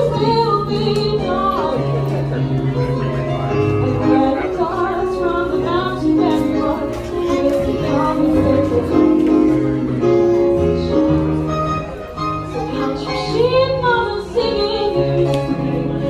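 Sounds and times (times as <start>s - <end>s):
instrumental accompaniment with bass: 0.0s - 16.0s
person singing: 3.8s - 11.1s, 12.6s - 16.0s.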